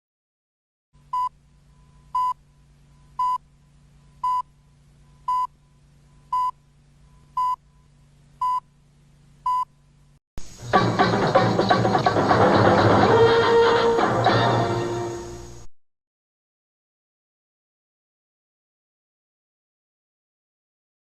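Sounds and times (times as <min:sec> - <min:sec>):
faint low hum: 0:01.0 - 0:10.6.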